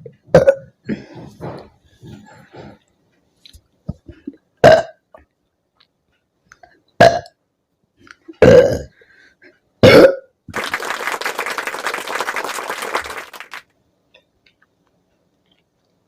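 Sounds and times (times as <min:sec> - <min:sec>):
woman burping loudly: 0:00.3 - 0:00.8, 0:04.6 - 0:05.0, 0:07.0 - 0:07.4, 0:08.4 - 0:09.0, 0:09.8 - 0:10.3
dense crackling hiss: 0:10.5 - 0:13.7.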